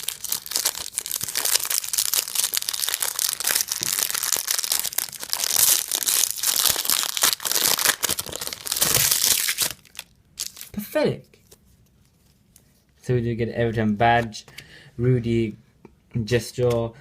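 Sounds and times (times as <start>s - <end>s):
foil wrapper tearing and crinkling: 0.0s - 10.8s.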